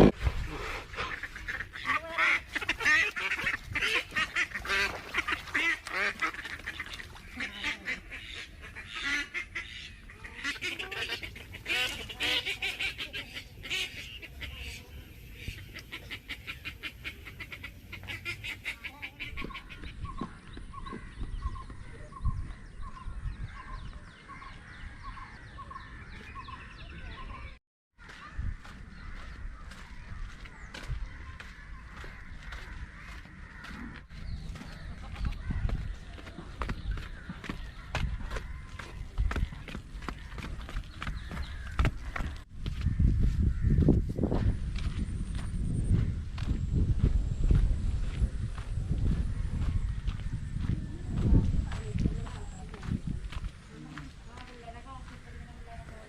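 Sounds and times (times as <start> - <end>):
waterfowl calling: 0.7 - 44.0.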